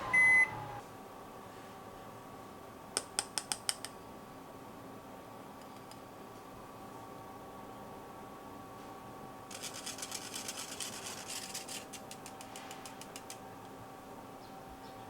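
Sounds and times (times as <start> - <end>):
utensil scratching in a bowl: 9.5 - 13.4.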